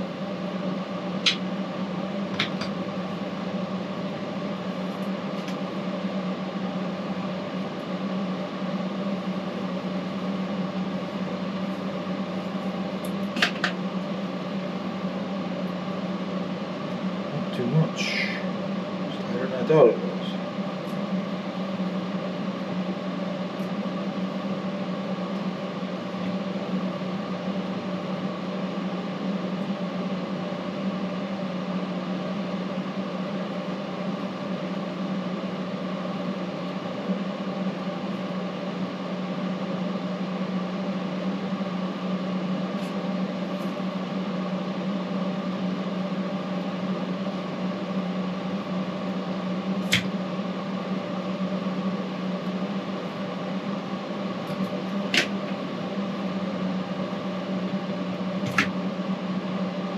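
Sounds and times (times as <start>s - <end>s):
steady machine hum: 0.0s - 59.9s.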